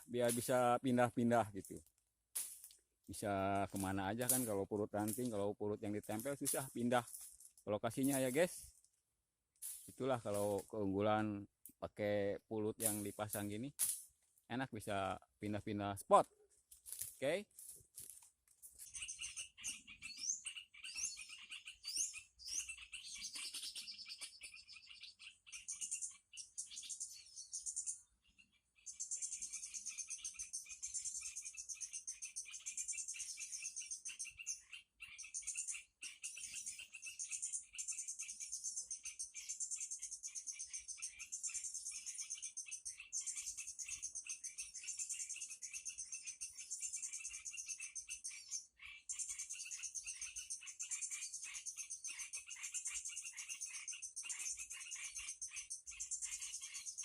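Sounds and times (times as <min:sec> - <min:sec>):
buzzy bird trills: 0:00.0 - 0:01.8, 0:03.1 - 0:08.8, 0:09.7 - 0:16.2, 0:18.8 - 0:57.0
bird chirps and whistles: 0:18.9 - 0:28.1, 0:28.8 - 0:57.0
frogs calling: 0:18.9 - 0:57.0.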